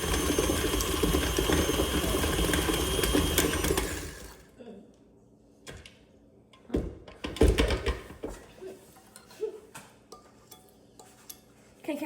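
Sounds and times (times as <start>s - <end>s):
kitchen knocks and thumps: 6.6s - 8.5s.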